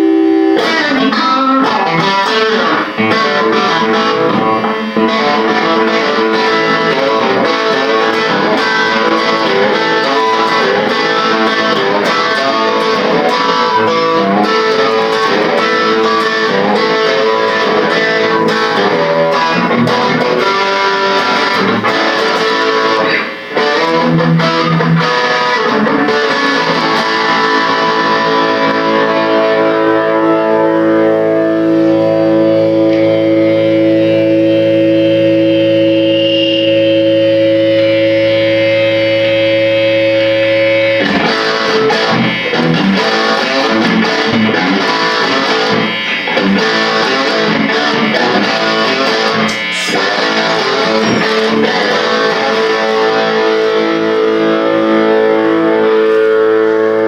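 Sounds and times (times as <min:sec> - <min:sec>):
guitar picking and chords: 0:00.0 - 0:57.0.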